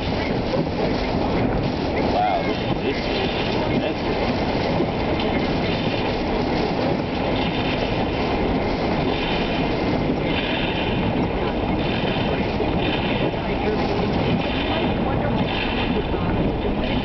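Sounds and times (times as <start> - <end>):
storm wind roaring: 0.0 - 17.0.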